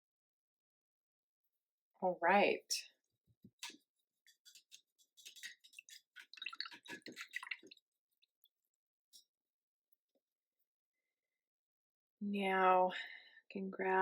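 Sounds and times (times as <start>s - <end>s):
paintbrush squishing in paint: 3.6s - 8.7s.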